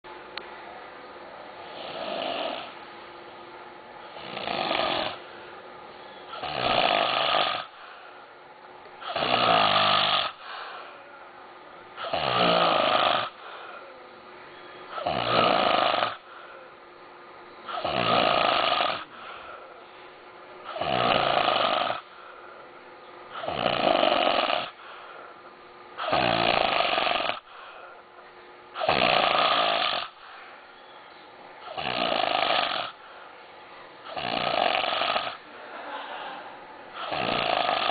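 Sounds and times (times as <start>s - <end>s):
man snoring loudly: 1.6s - 2.8s, 4.1s - 5.2s, 6.3s - 7.8s, 9.0s - 10.4s, 12.0s - 13.4s, 14.9s - 16.3s, 17.7s - 19.2s, 20.7s - 22.1s, 23.4s - 24.8s, 26.0s - 27.5s, 28.8s - 30.2s, 31.7s - 33.0s, 34.1s - 35.4s, 36.9s - 37.9s
soft breathing: 7.7s - 8.3s, 10.3s - 11.3s, 13.3s - 15.0s, 16.2s - 16.8s, 19.0s - 20.3s, 24.7s - 25.5s, 27.4s - 28.3s, 32.9s - 34.2s, 35.4s - 37.2s.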